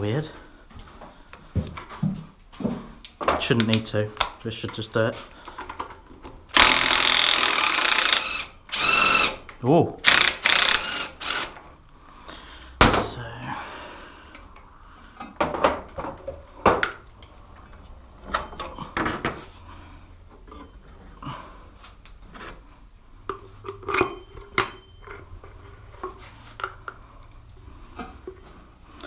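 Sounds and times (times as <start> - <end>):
metal tools clinking and knocking: 18.3 - 19.2, 20.4 - 20.9, 23.2 - 26.9.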